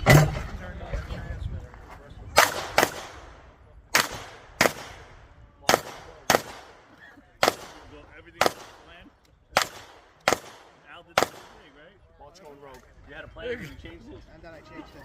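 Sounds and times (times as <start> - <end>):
pistol shots: 2.4 - 5.1, 5.7 - 8.9, 9.5 - 11.7.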